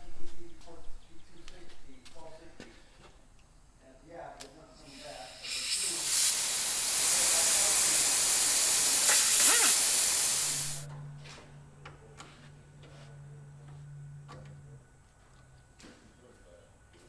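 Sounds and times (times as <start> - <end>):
compressed air hissing: 4.8 - 10.9.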